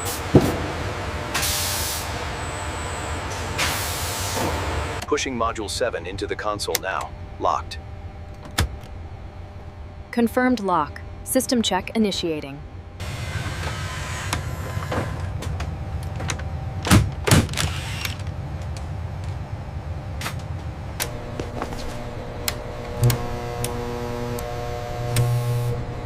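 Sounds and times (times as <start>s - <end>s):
steady low hum: 0.0s - 26.0s
mechanical clicks and clunks: 20.2s - 25.9s
sustained musical tones: 20.8s - 26.0s.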